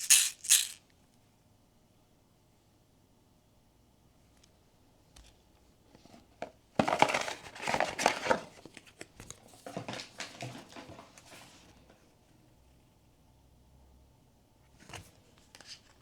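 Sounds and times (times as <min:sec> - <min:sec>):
packaging crinkling: 0:00.0 - 0:00.8.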